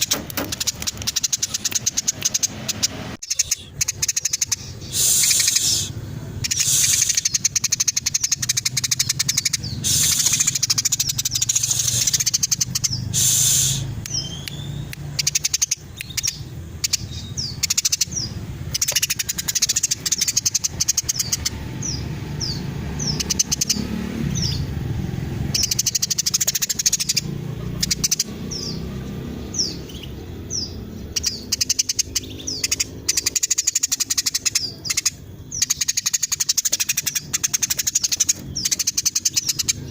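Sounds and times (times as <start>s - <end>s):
sparrow chattering: 0.0s - 39.9s.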